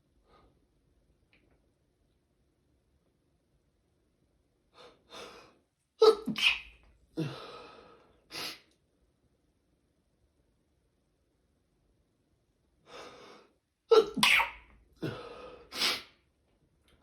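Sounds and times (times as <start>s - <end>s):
person sneezing: 6.0s - 7.4s, 13.9s - 16.1s.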